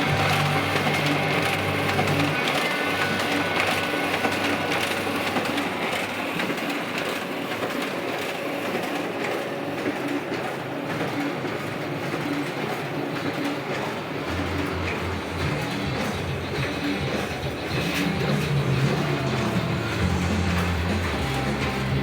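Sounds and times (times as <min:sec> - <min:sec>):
copier clattering: 0:00.0 - 0:22.0.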